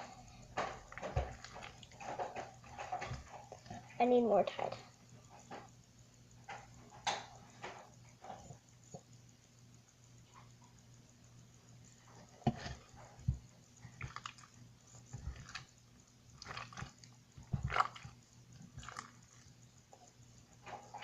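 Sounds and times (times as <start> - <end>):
slime squelching and clicking: 13.8 - 20.1.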